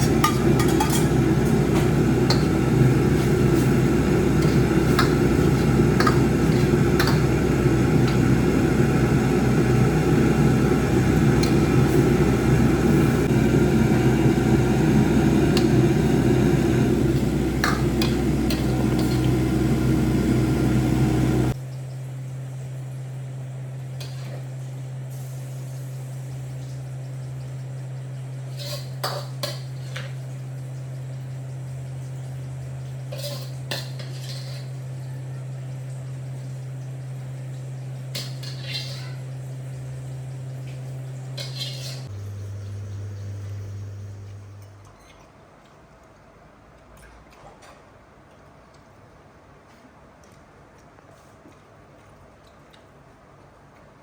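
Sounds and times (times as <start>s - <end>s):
metal utensils clinking: 0.0s - 3.6s, 4.2s - 8.3s, 33.1s - 34.8s, 38.1s - 39.3s, 41.4s - 42.1s
gas burner roaring: 0.0s - 21.6s, 22.5s - 44.7s
low steady hum: 0.0s - 44.9s.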